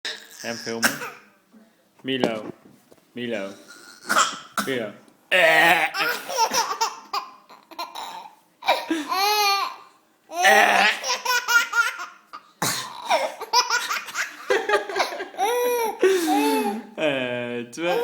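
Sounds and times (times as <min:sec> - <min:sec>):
burp sounds: 0:00.0 - 0:01.2, 0:03.7 - 0:06.1
baby laughing: 0:05.9 - 0:16.8.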